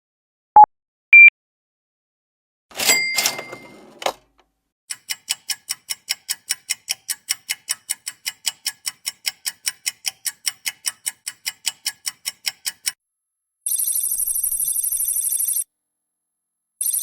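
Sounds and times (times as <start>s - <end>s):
fast even ticking: 4.9s - 13.0s.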